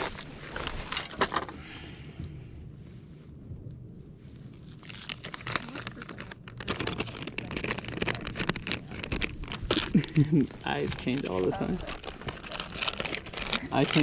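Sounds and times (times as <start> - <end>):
plastic crinkling: 0.0 - 1.2, 4.4 - 14.0.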